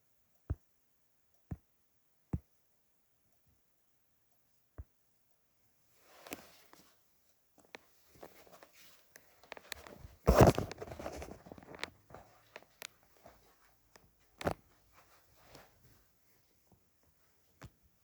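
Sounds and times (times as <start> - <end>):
small clicks and rustles: 5.9 - 18.0.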